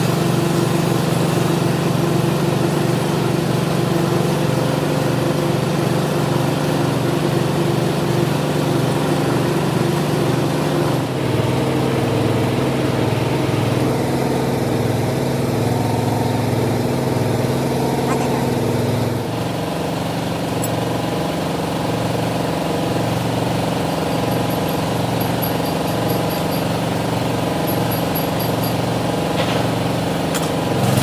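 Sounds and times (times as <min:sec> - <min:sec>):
workshop machinery humming: 0:07.0 - 0:31.0.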